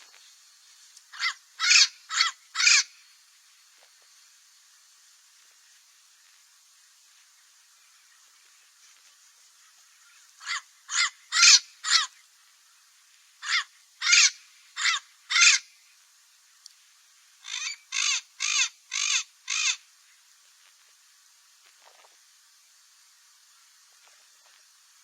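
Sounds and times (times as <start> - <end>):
parrot squawking: 1.1 - 2.9, 10.4 - 12.1, 13.4 - 15.6, 17.4 - 19.8.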